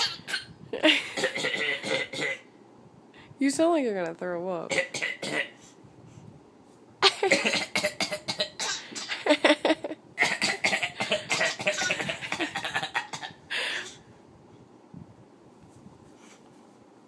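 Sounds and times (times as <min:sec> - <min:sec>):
child coughing: 0:00.0 - 0:02.4, 0:04.7 - 0:05.6, 0:07.0 - 0:09.4, 0:10.2 - 0:13.4
man coughing: 0:07.0 - 0:09.4, 0:10.2 - 0:13.4.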